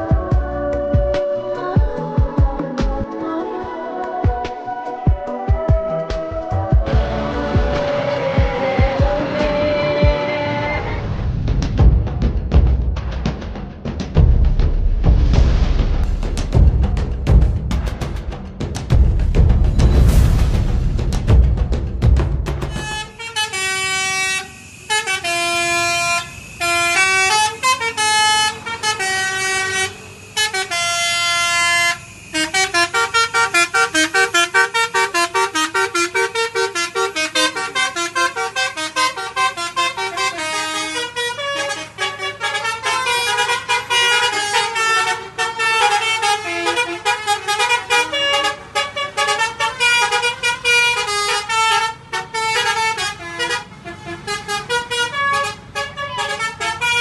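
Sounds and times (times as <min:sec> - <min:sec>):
musical bus horn playing a tune: 0:03.1 - 0:11.1, 0:22.6 - 0:57.0.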